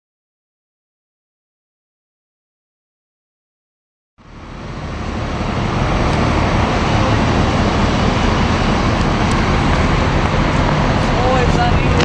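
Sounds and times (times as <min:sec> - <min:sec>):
bus engines and traffic: 0:04.2 - 0:12.0.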